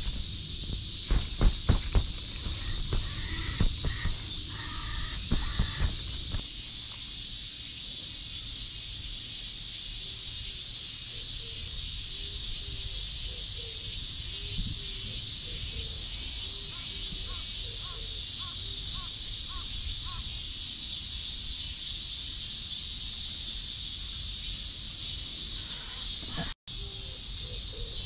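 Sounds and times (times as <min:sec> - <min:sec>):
footsteps: 0:00.0 - 0:06.4
cicadas droning: 0:00.0 - 0:28.0.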